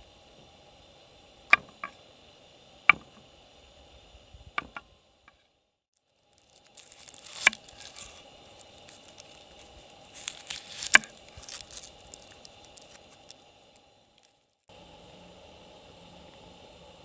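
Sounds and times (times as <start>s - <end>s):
campfire crackling and popping: 6.1s - 14.6s.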